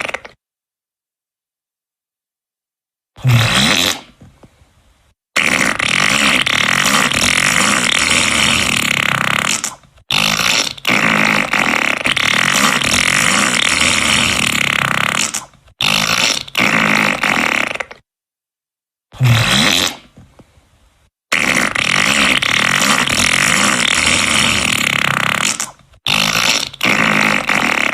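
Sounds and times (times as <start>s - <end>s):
fart sound effects: 0.0s - 0.4s, 3.2s - 4.4s, 5.4s - 18.1s, 19.2s - 20.3s, 21.3s - 27.9s.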